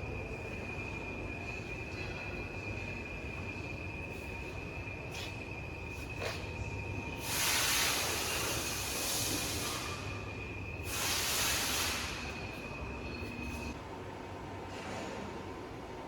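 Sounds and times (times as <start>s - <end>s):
loud hiss bursts: 7.2s - 10.0s, 10.8s - 12.3s.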